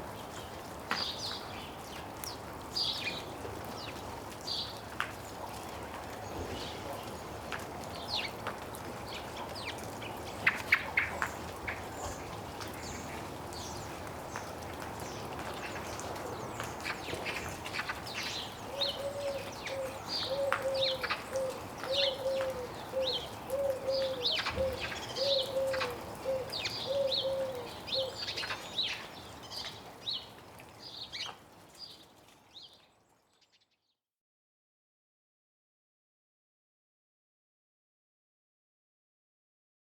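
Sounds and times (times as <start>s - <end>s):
small birds chirping: 15.1s - 33.8s.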